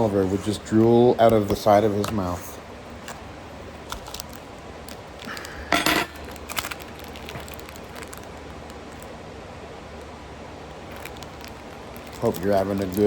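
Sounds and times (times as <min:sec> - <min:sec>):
dishes and cutlery clinking: 0:05.7 - 0:06.2.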